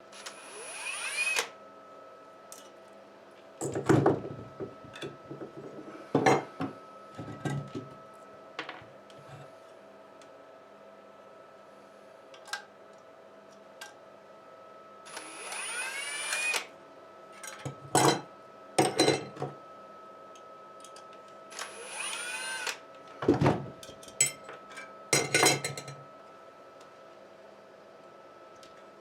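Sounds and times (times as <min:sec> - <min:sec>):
power drill spinning: 0:00.2 - 0:01.5, 0:15.1 - 0:16.7, 0:21.5 - 0:22.8.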